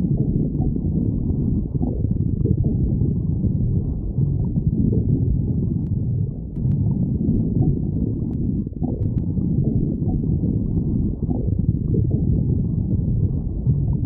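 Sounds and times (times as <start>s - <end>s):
stomach growling: 0.0s - 14.0s.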